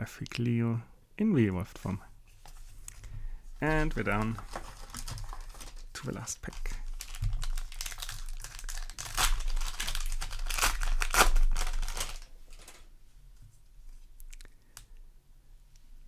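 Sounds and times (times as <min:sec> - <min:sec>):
wrapper crinkling and tearing: 0:03.6 - 0:12.9.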